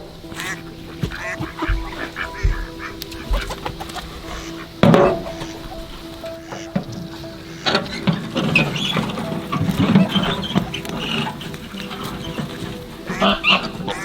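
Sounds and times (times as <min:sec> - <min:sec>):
soft low thumps: 0:00.0 - 0:06.1
fowl calling: 0:00.0 - 0:14.0.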